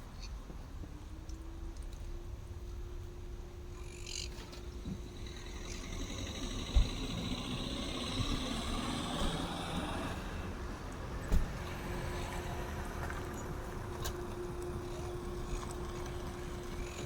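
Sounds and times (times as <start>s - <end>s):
birds chirping: 3.8s - 10.2s.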